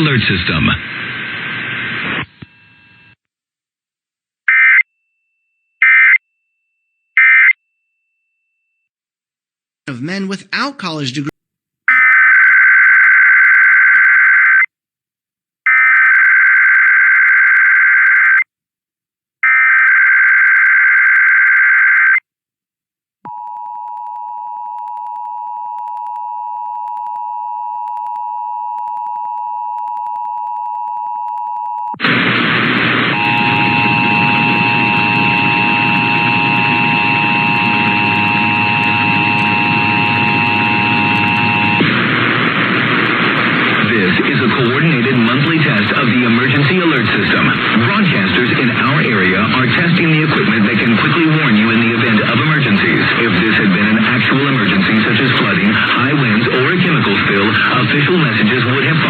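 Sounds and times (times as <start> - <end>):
two-tone attention signal: 33.2 - 41.8.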